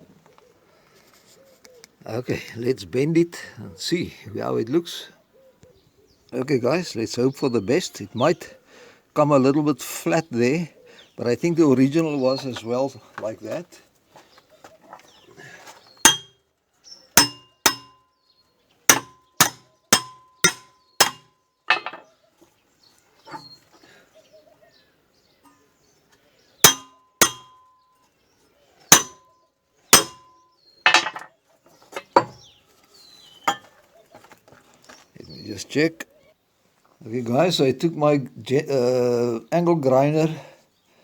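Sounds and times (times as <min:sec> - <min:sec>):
hammer blows on metal pipe: 0:16.1 - 0:16.3, 0:17.2 - 0:18.0, 0:18.9 - 0:21.3, 0:26.6 - 0:27.6, 0:28.9 - 0:29.2, 0:30.0 - 0:30.3.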